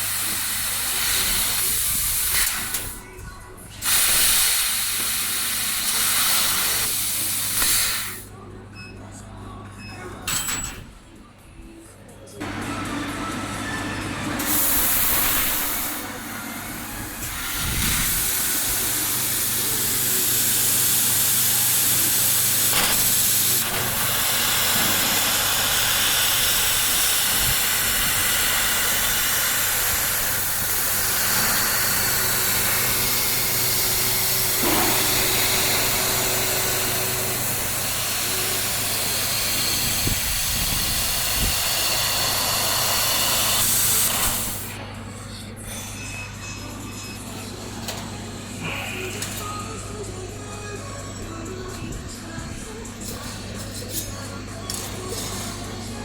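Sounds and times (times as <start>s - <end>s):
assist gas hissing: 3.8s - 8.3s, 17.0s - 44.7s.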